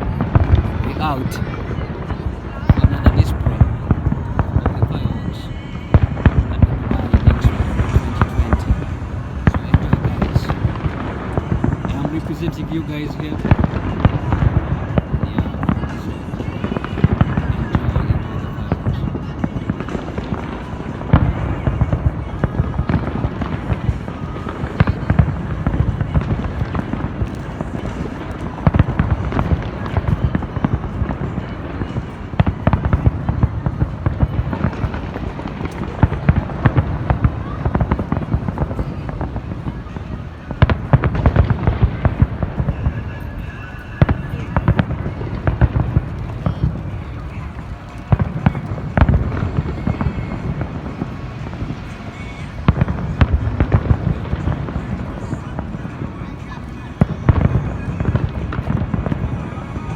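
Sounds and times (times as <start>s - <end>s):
continuous rumble: 0.0s - 59.9s
fireworks bangs and crackling: 0.0s - 59.9s.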